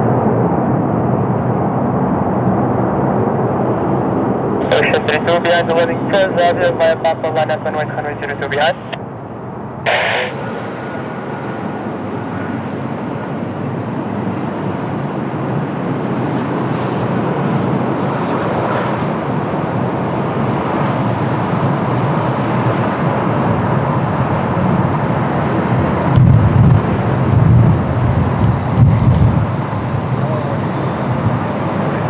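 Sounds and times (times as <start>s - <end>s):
jet engines rushing: 0.0s - 32.0s.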